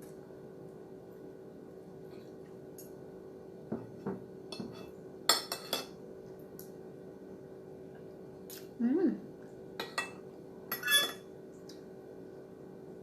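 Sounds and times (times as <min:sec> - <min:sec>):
steady low hum: 0:00.0 - 0:13.0
utensil clinking against a dish: 0:04.5 - 0:06.0, 0:09.8 - 0:11.3.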